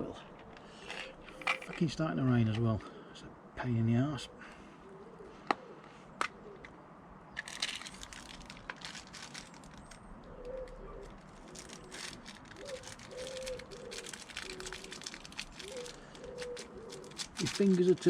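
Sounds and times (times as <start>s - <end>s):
crackling and rustling: 0.1s - 2.9s, 7.4s - 18.0s
pigeon cooing: 4.2s - 6.7s, 10.2s - 18.0s.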